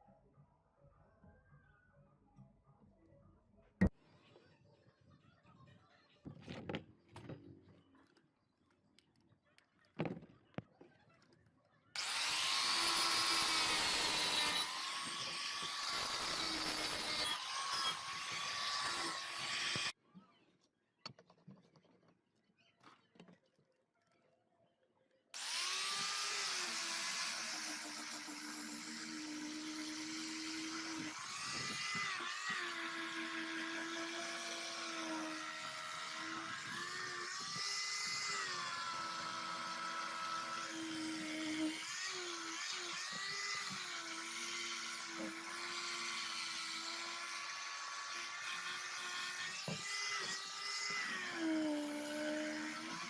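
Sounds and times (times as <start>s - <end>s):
high-speed electric power tool: 12.0s - 20.0s, 25.4s - 53.0s.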